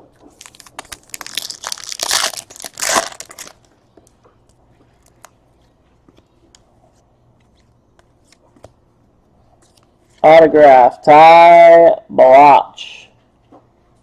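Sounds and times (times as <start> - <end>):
wrapper crinkling: 0.2 - 3.7.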